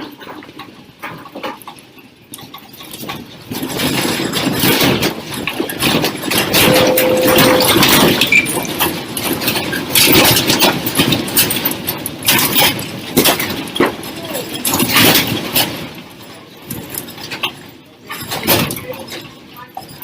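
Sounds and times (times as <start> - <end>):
objects rattling and clattering: 0.0 - 7.2, 8.3 - 20.0
short steady tone: 6.6 - 8.5.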